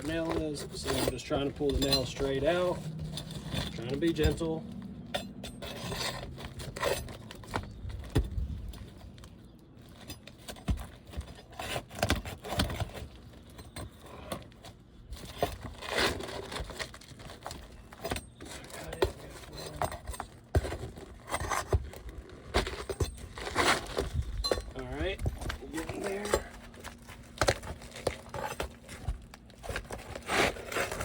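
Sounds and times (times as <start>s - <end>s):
metal tools scraping and knocking: 0.0s - 8.9s, 17.5s - 31.0s.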